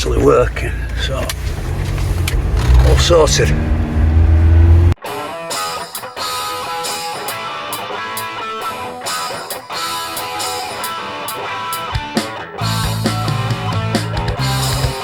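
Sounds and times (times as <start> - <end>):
strummed guitar music with beat: 5.0 - 15.0.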